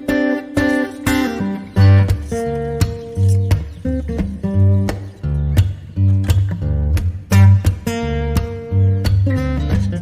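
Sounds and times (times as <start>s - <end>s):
acoustic guitar music with bass: 0.0s - 10.0s.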